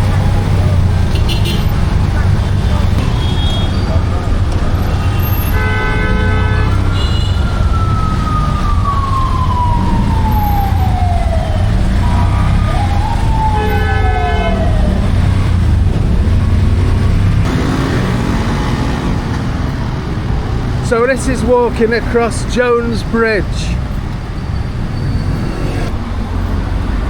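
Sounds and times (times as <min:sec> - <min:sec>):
motor tricycle engine rumble: 0:00.0 - 0:27.0
street traffic: 0:00.0 - 0:27.0
horn blast: 0:04.8 - 0:07.5, 0:13.4 - 0:15.6
siren wail falling in pitch: 0:06.7 - 0:15.6.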